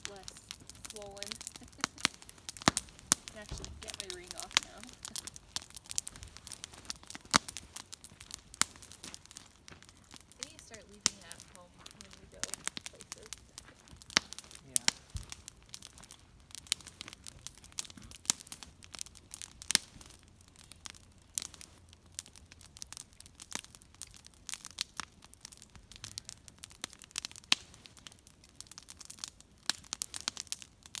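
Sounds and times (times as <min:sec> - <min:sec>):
flame hissing: 0:00.0 - 0:21.8
campfire crackling and popping: 0:00.0 - 0:31.0.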